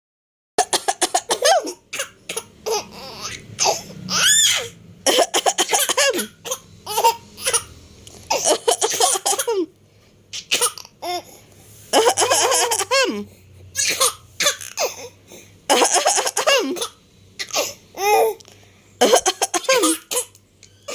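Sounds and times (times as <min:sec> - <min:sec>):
person coughing: 0:00.6 - 0:02.5, 0:08.3 - 0:09.7, 0:12.9 - 0:17.8, 0:19.0 - 0:20.4
baby laughing and squealing: 0:02.6 - 0:07.7, 0:11.9 - 0:13.2, 0:15.7 - 0:18.4.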